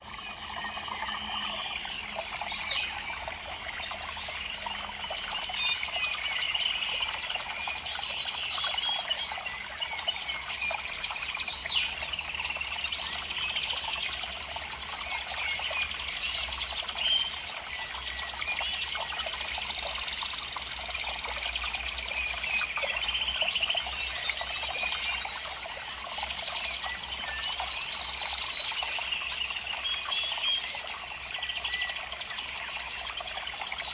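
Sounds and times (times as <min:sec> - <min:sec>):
chorus of small birds chirping: 0:00.0 - 0:33.9.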